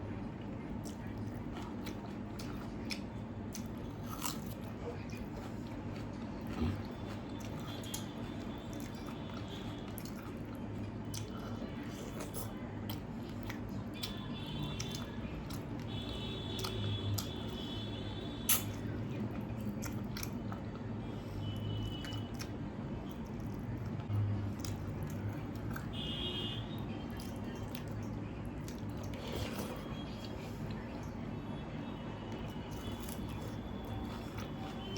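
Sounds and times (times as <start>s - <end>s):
low steady hum: 0.0s - 34.9s
wet chewing mouth sounds: 0.7s - 17.8s, 18.4s - 20.9s.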